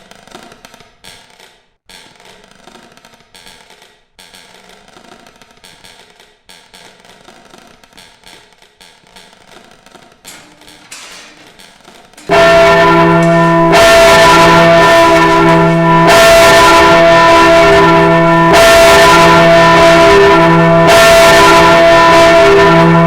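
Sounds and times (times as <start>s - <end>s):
church bell ringing: 10.3s - 23.0s.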